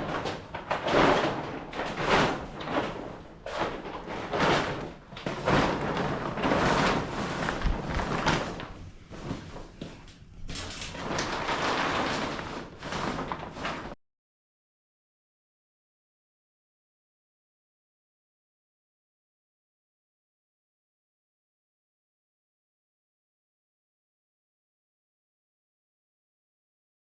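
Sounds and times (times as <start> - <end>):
plastic tarp rustling and crinkling: 0.0 - 14.0.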